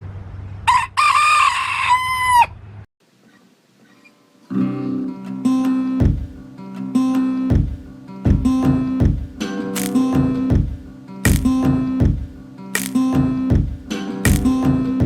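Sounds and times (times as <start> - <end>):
rooster crowing: 0.6 - 2.6
acoustic guitar music: 3.9 - 15.0.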